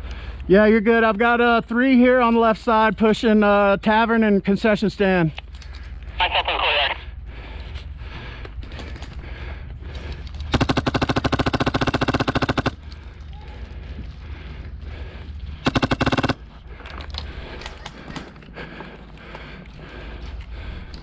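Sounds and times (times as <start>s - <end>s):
airsoft gun firing bursts: 10.5s - 12.9s, 15.6s - 16.5s.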